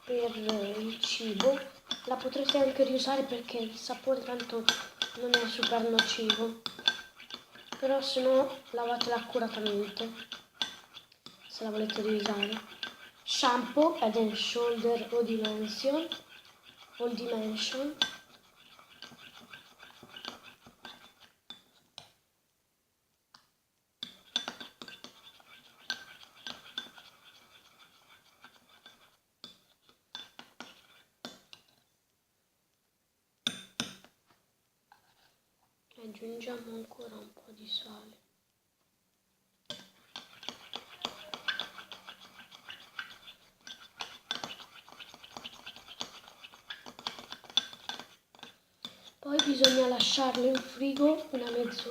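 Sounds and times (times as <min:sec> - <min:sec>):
spoon stirring thick mixture: 0:00.0 - 0:22.2, 0:23.4 - 0:31.9, 0:33.5 - 0:35.4, 0:39.6 - 0:51.9
spoon clinking against bowl: 0:49.4 - 0:50.7.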